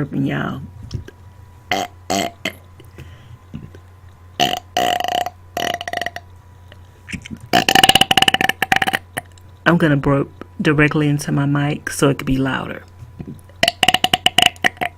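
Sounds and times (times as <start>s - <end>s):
person burping: 1.7s - 2.6s, 4.4s - 6.2s, 7.1s - 9.3s, 13.2s - 14.9s.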